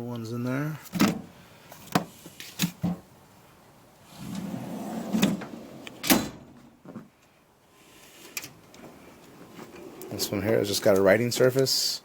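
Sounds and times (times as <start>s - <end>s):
steel drawers sliding: 4.1s - 6.5s
steel drawers banging shut: 4.2s - 6.6s.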